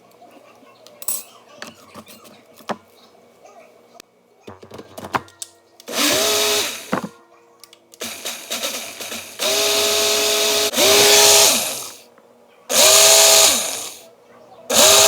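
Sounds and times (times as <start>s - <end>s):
blender motor whining: 5.9s - 7.1s, 8.0s - 12.0s, 12.7s - 14.0s, 14.7s - 15.0s.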